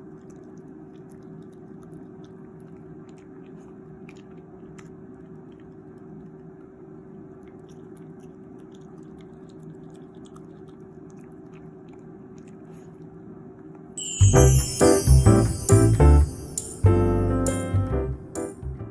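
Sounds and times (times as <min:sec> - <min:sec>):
dog chewing a treat: 0:00.0 - 0:13.2
keyboard music: 0:14.0 - 0:18.9.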